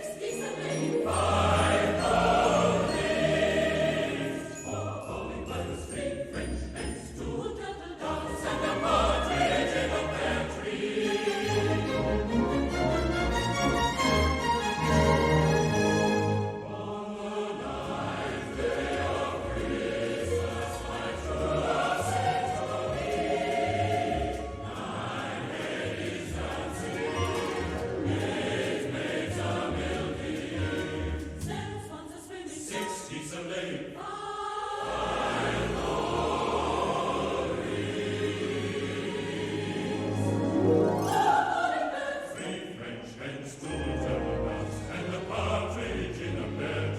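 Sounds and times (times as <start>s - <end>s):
choir singing: 0.0s - 46.9s
instrumental accompaniment: 8.2s - 17.0s, 17.9s - 31.7s.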